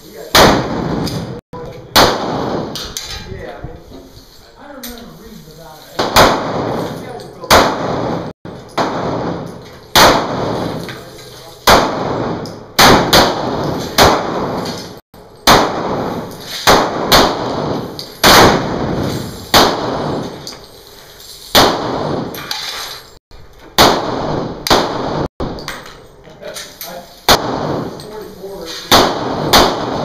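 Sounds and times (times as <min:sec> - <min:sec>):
pistol shots echoing: 0:00.3 - 0:03.0, 0:06.0 - 0:10.8, 0:11.7 - 0:20.4, 0:21.6 - 0:22.4, 0:23.8 - 0:25.6, 0:27.3 - 0:28.0, 0:28.9 - 0:30.0.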